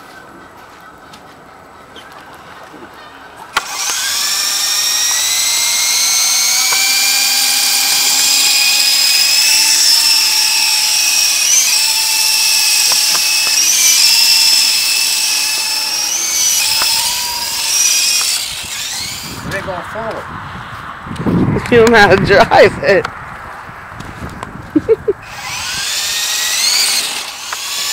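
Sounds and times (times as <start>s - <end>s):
rc helicopter motor whining: 3.5s - 20.2s, 25.2s - 27.9s.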